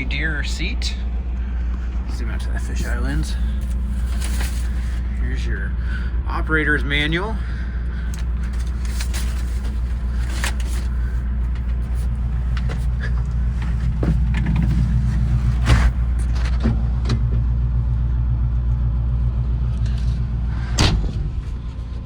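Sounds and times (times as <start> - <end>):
excavator diesel engine idling: 0.0 - 16.4
knocks and clicks in cab: 11.5 - 16.6.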